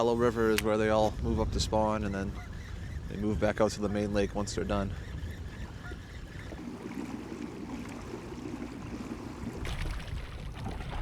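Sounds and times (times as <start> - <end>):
wind rumbling on microphone: 0.0 - 6.8, 8.8 - 11.0
water sloshing against kayak: 2.3 - 11.0.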